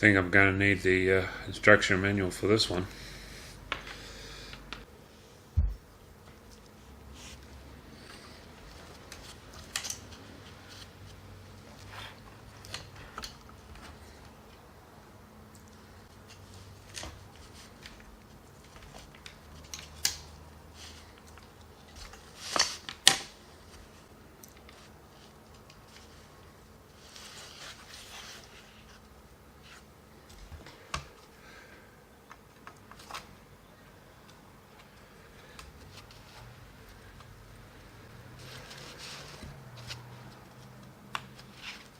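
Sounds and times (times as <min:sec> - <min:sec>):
rustling: 0:20.6 - 0:31.2, 0:34.8 - 0:41.9.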